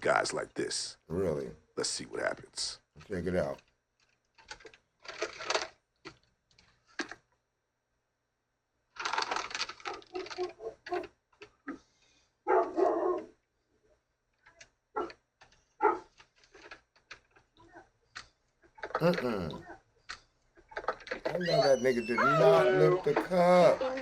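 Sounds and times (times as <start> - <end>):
dog barking: 12.4 - 13.3, 15.0 - 15.2, 15.8 - 16.1.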